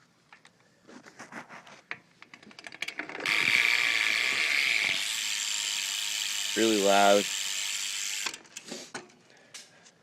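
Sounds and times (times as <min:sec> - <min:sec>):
bicycle hub ratchet clicking: 0:02.6 - 0:08.7.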